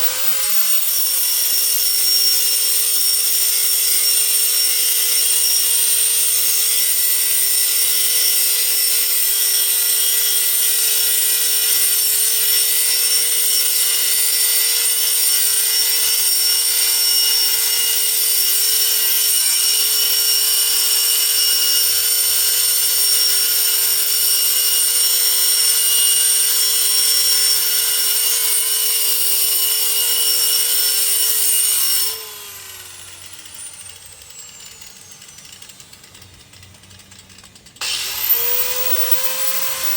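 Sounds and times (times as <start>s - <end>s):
angle grinder cutting steel: 0.0s - 39.9s
grinder motor winding down: 10.6s - 39.9s.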